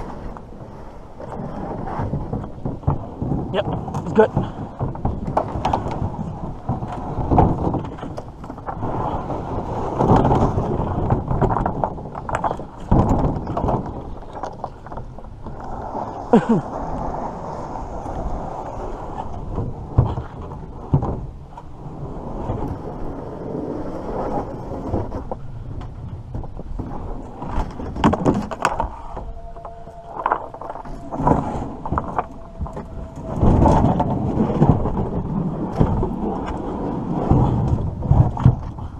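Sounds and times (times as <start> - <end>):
wind rumbling on microphone: 0.0 - 38.9
two-note tone: 29.2 - 34.0.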